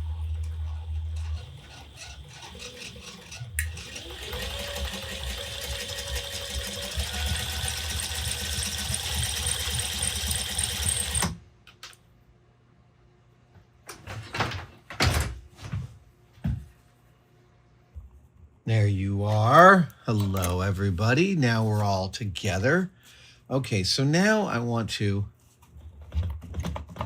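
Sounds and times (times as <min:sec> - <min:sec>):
sewing machine running: 0:00.0 - 0:11.4.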